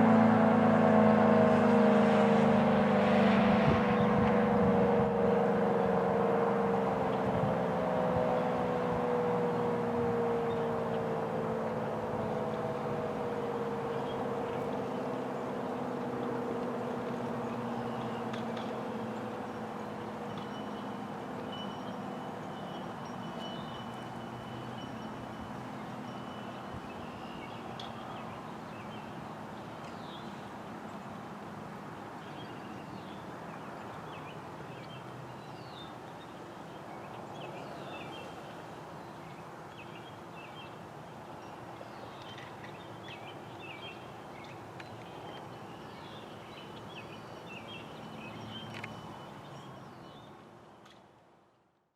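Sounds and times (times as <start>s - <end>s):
distant background hum: 0.0s - 51.0s
birds chirping: 9.2s - 31.1s, 32.2s - 51.0s.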